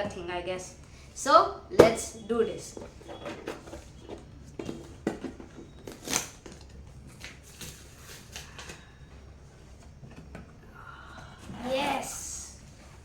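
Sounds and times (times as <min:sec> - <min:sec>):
plastic objects clicking and knocking: 0:02.8 - 0:07.4.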